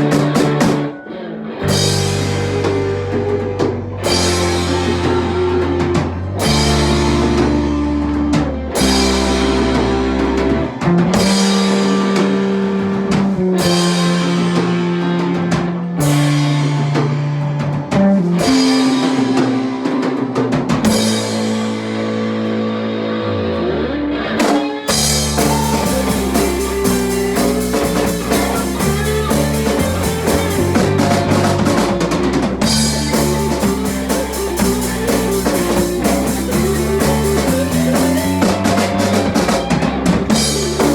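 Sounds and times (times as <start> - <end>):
drum hits: 0.0 - 0.9, 24.4 - 40.9
bass sliding downward: 0.0 - 40.9
rock band playing: 0.0 - 40.9.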